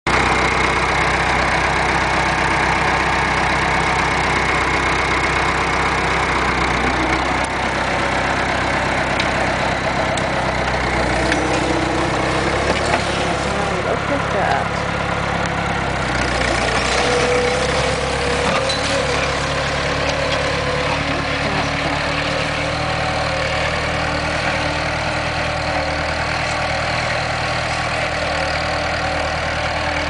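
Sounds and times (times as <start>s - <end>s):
tractor engine running: 0.0s - 30.0s.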